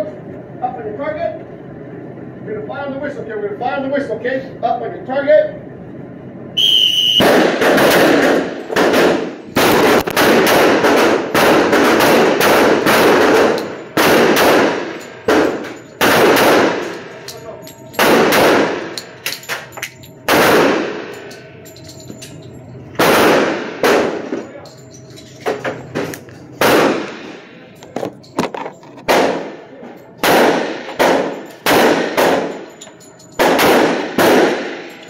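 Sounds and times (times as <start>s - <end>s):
whistle blast: 6.6s - 7.4s
pistol shots echoing: 7.2s - 21.5s, 23.0s - 24.5s, 26.6s - 27.6s, 29.0s - 32.8s, 33.4s - 35.0s.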